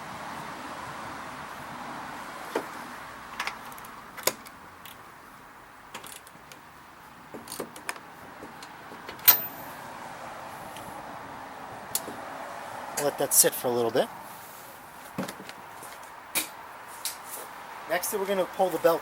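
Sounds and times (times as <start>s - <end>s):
tool clinking: 9.2s - 9.7s.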